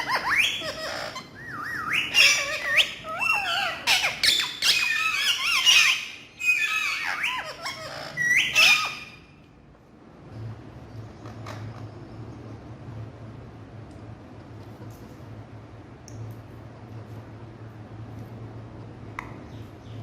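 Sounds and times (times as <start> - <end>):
parrot chattering and squawking: 0.0 - 9.4.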